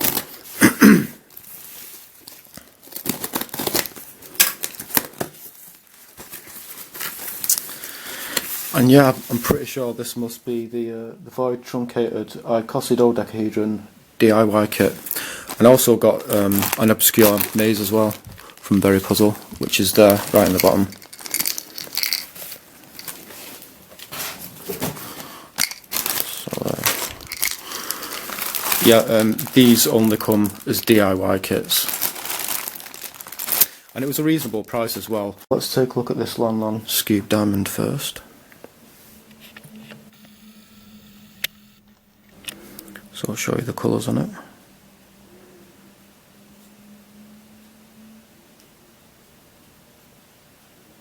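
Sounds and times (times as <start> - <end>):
packaging tearing and crinkling: 0.0 - 0.6, 1.3 - 7.9, 14.8 - 24.3, 25.6 - 34.2.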